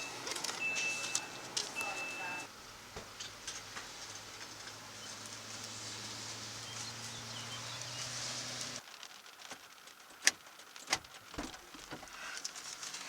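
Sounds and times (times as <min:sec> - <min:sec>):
low vehicle engine hum: 0:00.0 - 0:08.8
rain falling: 0:00.0 - 0:13.0.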